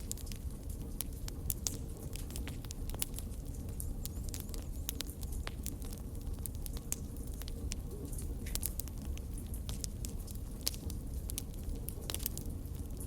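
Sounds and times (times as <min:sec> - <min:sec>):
fire crackling: 0:00.0 - 0:13.0.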